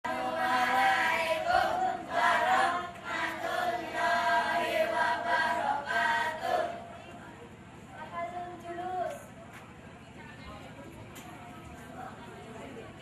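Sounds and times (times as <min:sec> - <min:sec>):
children singing in unison: 0:00.1 - 0:06.8.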